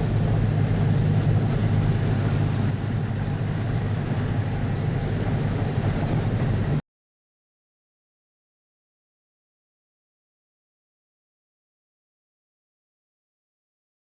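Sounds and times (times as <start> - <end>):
loud low rumble: 0.0 - 6.8.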